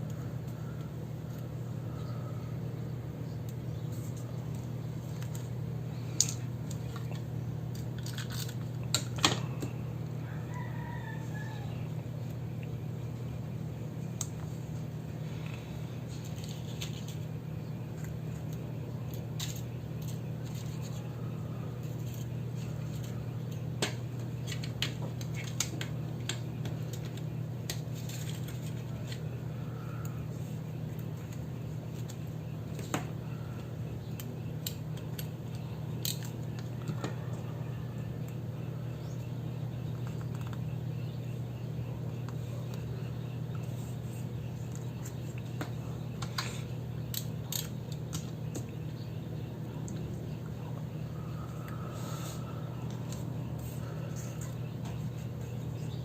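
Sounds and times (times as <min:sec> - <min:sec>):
steady low hum: 0:00.0 - 0:56.0
distant bird call: 0:28.8 - 0:56.0.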